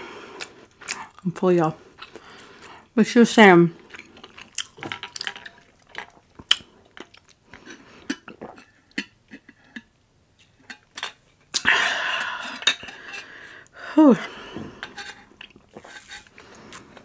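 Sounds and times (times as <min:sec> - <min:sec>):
chewing smacks: 0:03.9 - 0:09.9.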